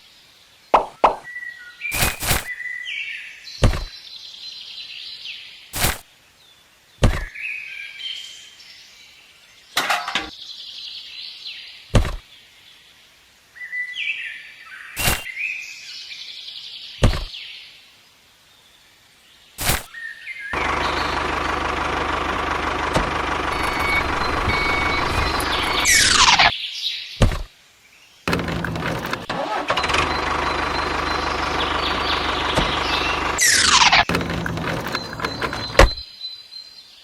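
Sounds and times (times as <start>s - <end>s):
birds chirping: 0.6s - 5.2s, 6.8s - 8.0s, 16.9s - 17.6s, 19.6s - 27.5s, 28.2s - 37.0s
sharp knocks or taps: 0.8s - 1.2s.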